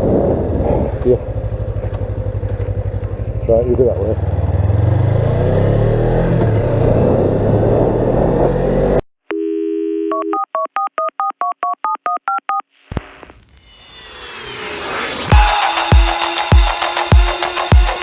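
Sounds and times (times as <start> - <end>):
motorcycle engine running: 0.0 - 7.4, 13.7 - 18.0
whoosh: 12.9 - 18.0.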